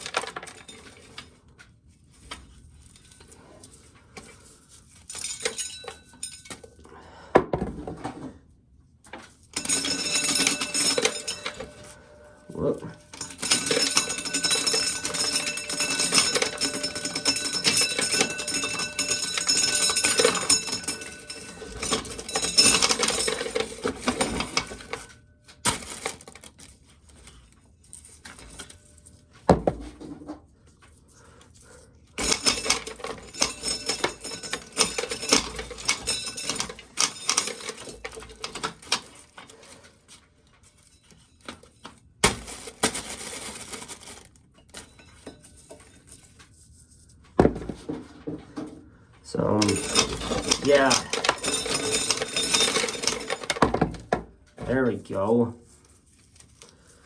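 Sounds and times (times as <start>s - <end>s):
corn sheller clattering kernels: 9.6s - 25.1s, 25.7s - 26.6s, 32.2s - 39.9s, 41.1s - 45.9s, 49.3s - 57.0s.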